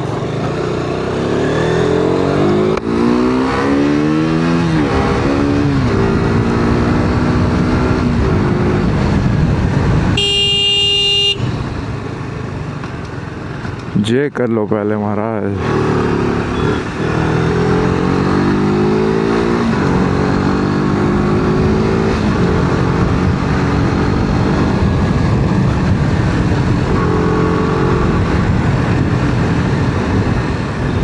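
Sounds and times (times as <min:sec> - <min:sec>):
motorcycle engine accelerating: 0:00.0 - 0:13.8, 0:15.6 - 0:31.0
road noise: 0:00.0 - 0:31.0
wind noise: 0:04.3 - 0:12.0, 0:17.3 - 0:31.0.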